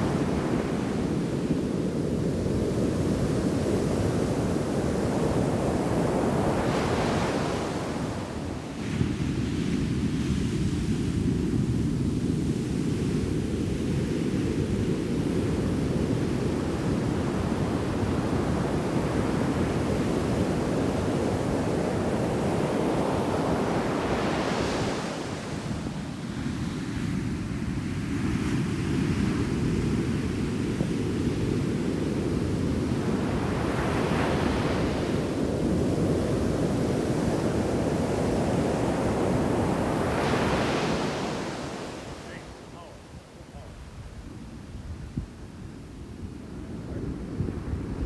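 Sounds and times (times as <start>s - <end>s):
wind rumbling on microphone: 28.6s - 48.0s
ocean waves crashing: 33.0s - 43.9s.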